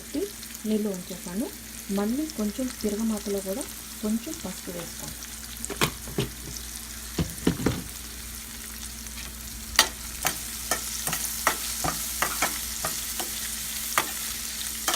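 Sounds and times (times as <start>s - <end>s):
spices sizzling in oil: 0.0s - 14.9s
spoon knocking against pan: 5.7s - 6.6s, 7.2s - 7.9s, 9.8s - 13.4s.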